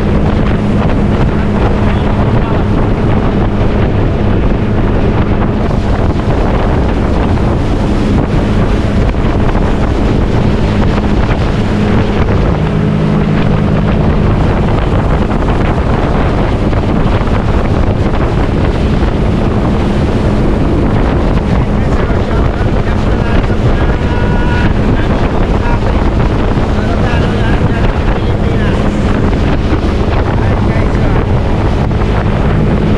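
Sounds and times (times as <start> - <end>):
motorboat engine humming: 0.0 - 32.9
wind buffeting microphone: 0.0 - 32.9.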